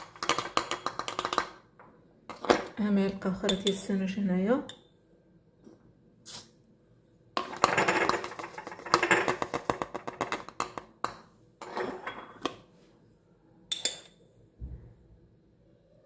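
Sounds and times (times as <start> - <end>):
spoon clinking on glass: 13.7 - 14.2.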